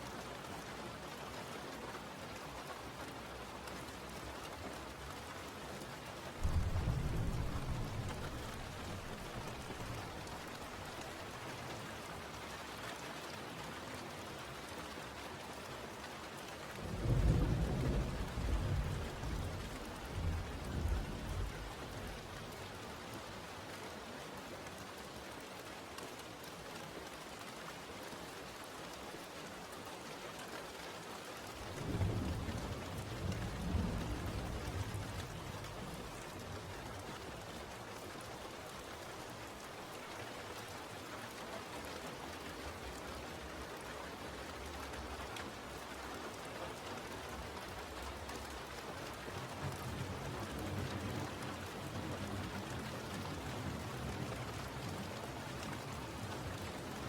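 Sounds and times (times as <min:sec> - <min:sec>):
steady rain: 0:00.0 - 0:57.0
thunder rumbling: 0:06.4 - 0:10.4, 0:31.6 - 0:36.4.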